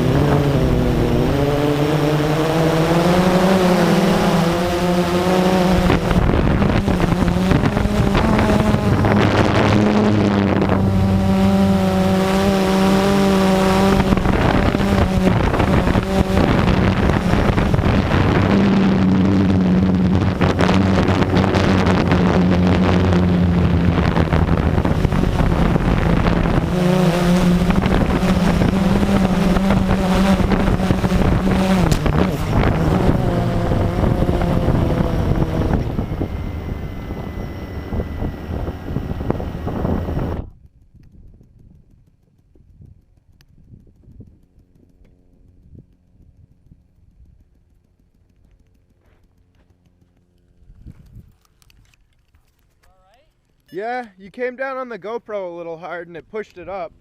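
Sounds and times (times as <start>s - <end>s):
wind noise: 0.0s - 47.5s, 50.5s - 52.6s
quadcopter motors droning: 0.0s - 54.6s.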